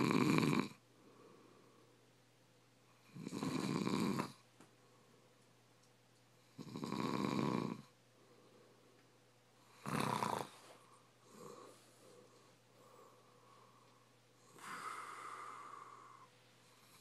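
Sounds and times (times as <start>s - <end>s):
man snoring: 0.0s - 0.8s, 3.0s - 4.4s, 6.5s - 7.9s, 9.7s - 10.6s.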